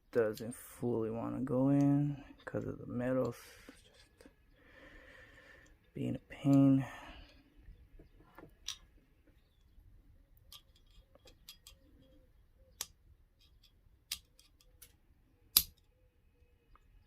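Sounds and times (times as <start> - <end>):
clicks and taps of steel parts: 7.2 - 16.0.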